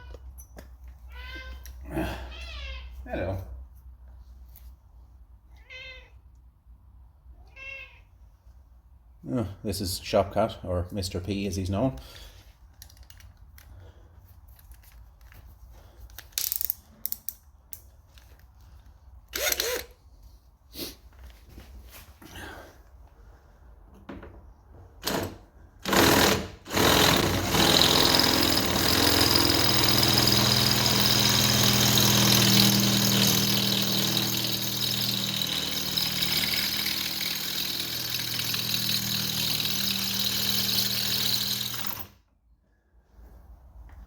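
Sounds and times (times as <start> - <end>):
power drill drilling into steel: 19.4 - 19.9, 25.0 - 42.1.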